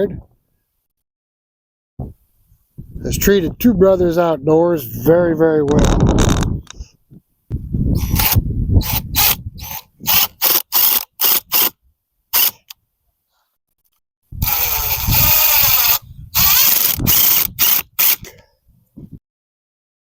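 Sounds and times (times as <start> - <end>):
power drill running: 8.0 - 11.7, 12.4 - 12.7, 14.4 - 18.3.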